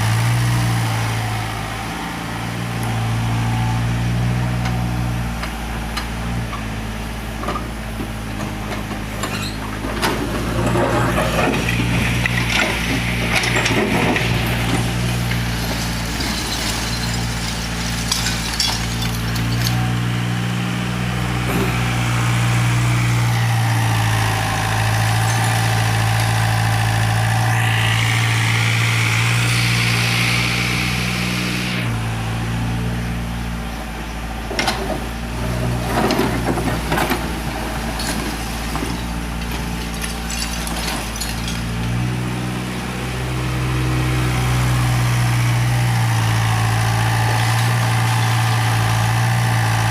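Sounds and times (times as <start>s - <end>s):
excavator diesel engine: 0.0s - 49.9s
bucket clattering in rubble: 8.4s - 20.0s, 35.8s - 42.1s
hydraulic whine: 21.0s - 32.2s.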